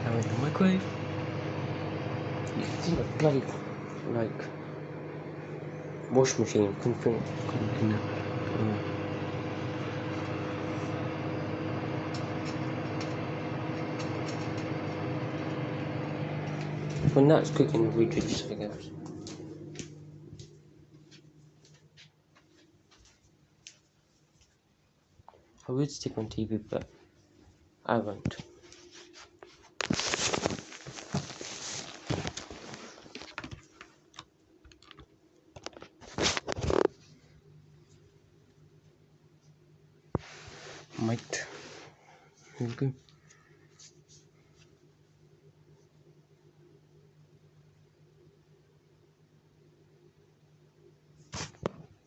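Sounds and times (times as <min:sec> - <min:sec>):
microwave oven humming: 0:00.0 - 0:23.0, 0:41.0 - 0:52.0
clicks and rustling of handling: 0:29.4 - 0:37.0.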